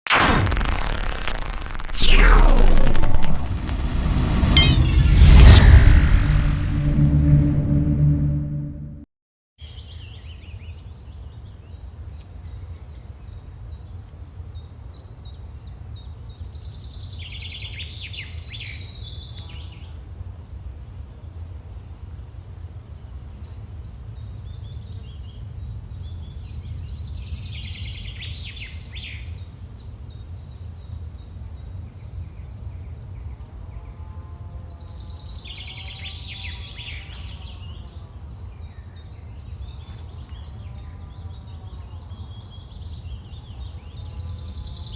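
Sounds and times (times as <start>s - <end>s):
low ambient rumble: 0.1s - 9.1s.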